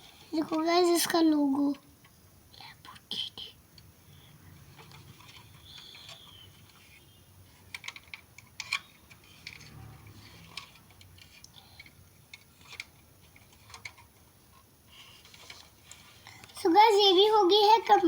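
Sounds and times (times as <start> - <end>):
toy car clicks and taps: 7.6 - 14.1.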